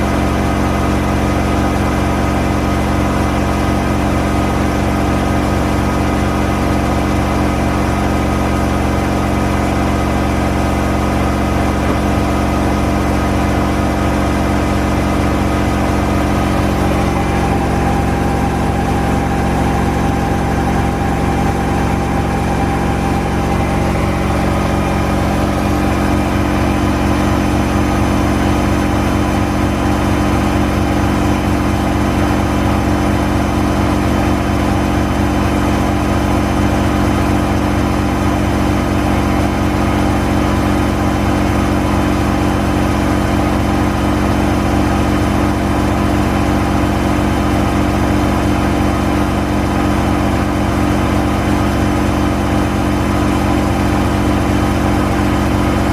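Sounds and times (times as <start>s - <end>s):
washing machine motor hum: 0.0s - 55.9s
higher tone: 16.4s - 28.1s.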